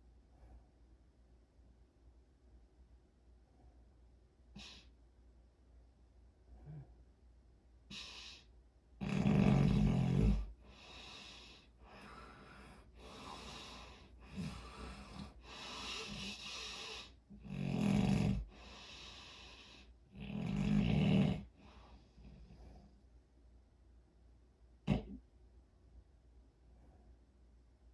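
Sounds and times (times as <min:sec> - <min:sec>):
soft breathy breaths: 0:00.0 - 0:01.2, 0:03.3 - 0:05.2, 0:06.3 - 0:20.5, 0:21.2 - 0:23.4, 0:26.5 - 0:27.9
loud rattling snores: 0:09.0 - 0:10.5, 0:17.4 - 0:18.5, 0:20.1 - 0:21.5, 0:24.9 - 0:25.2.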